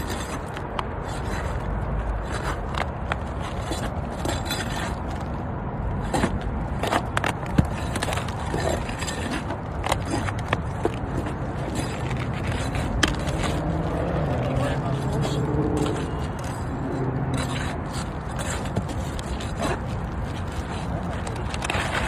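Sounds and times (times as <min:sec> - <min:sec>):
pry bar scraping shingles: 0:00.0 - 0:22.0.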